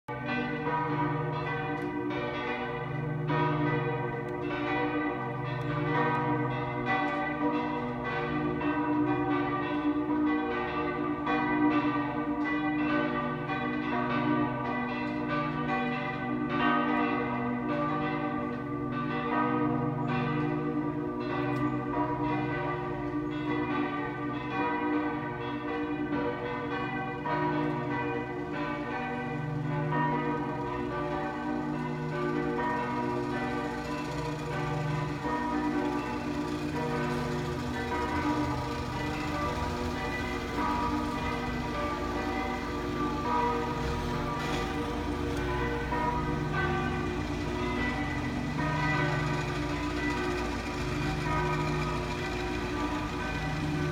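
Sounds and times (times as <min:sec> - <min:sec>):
church bells pealing: 0:00.1 - 0:53.9.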